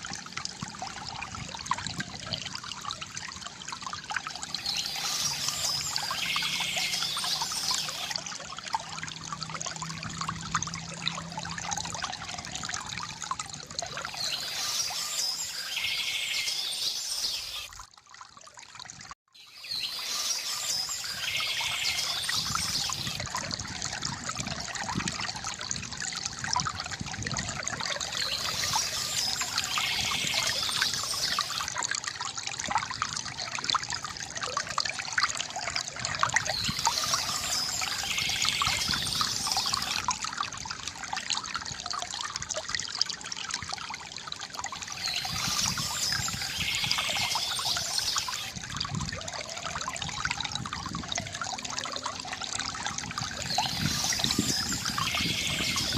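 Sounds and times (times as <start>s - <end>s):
water trickling from fountain: 0.0s - 55.9s
birds chirping: 4.6s - 8.1s, 14.1s - 17.7s, 36.5s - 40.0s, 44.9s - 48.5s, 53.4s - 55.9s.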